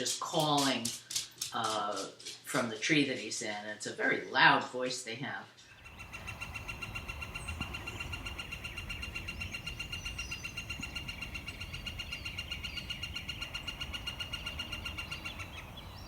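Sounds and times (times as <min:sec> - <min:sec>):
distant birds singing: 0:05.6 - 0:16.0
woodpecker calling: 0:05.7 - 0:16.0.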